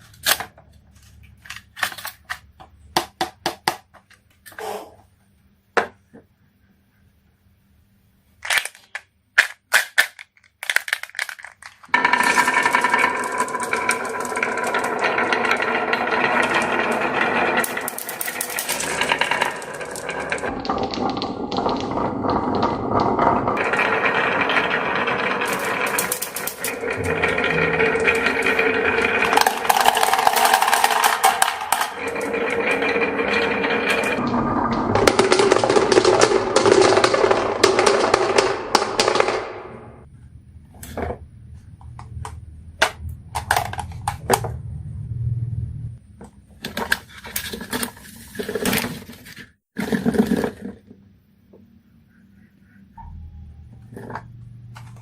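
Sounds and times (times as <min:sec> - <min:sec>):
marbles rolling down wooden run: 0:11.2 - 0:40.1, 0:49.8 - 0:50.9.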